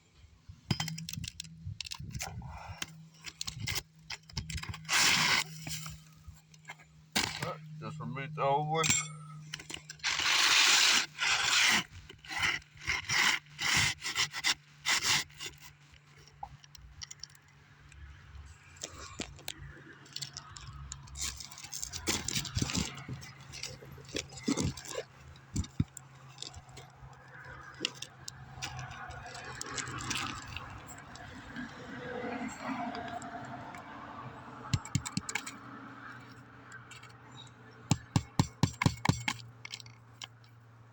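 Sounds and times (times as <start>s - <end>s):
roofing shingle scraping: 2.0s - 7.6s, 9.5s - 17.3s, 21.1s - 31.7s.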